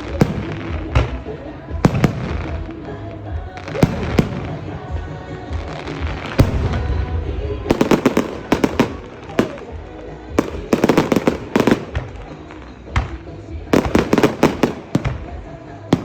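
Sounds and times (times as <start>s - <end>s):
rumble of distant explosions: 3.8s - 9.8s.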